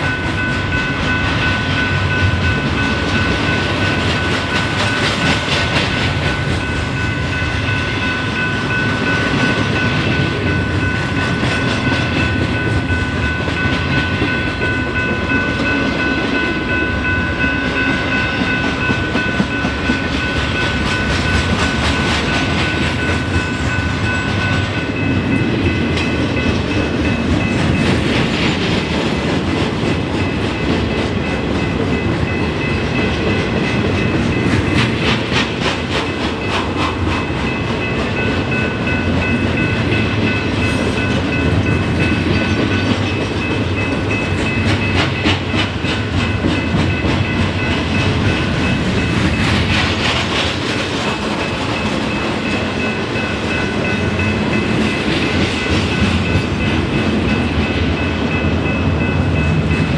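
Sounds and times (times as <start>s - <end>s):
train wheels clattering on rails: 0.0s - 59.9s.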